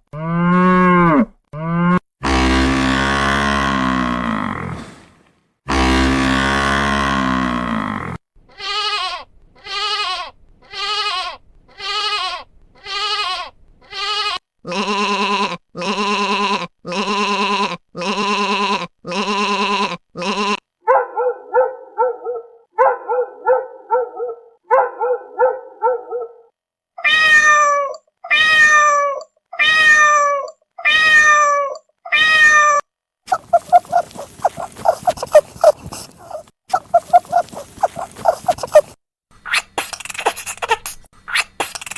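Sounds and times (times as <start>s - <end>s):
repeated animal calls: 5.7s - 41.9s
cat meows: 27.0s - 32.9s.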